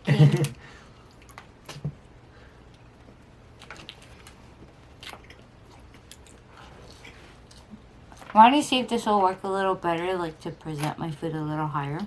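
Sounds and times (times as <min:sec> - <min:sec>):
chewing food: 0:02.7 - 0:08.4.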